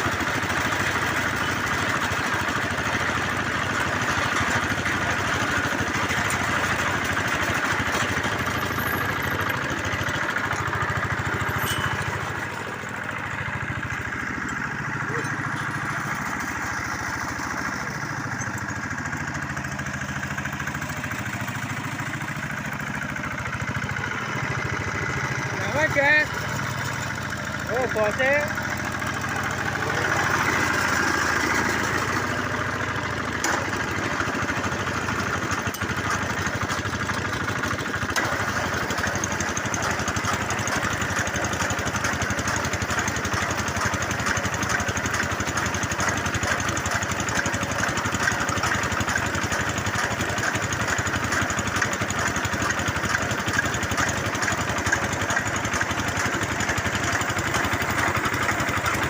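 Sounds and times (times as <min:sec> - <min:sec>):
small engine running: 0:00.0 - 0:59.0.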